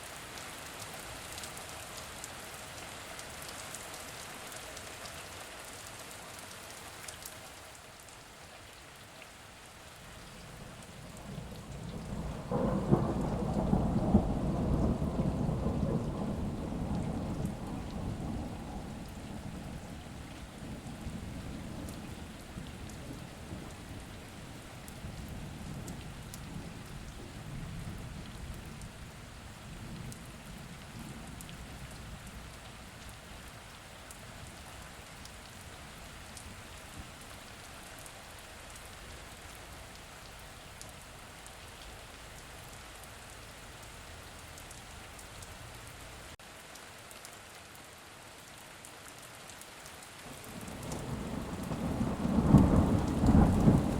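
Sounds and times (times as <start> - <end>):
steady rain: 0.0 - 53.9
thunder rumbling: 10.6 - 24.1, 50.4 - 53.9.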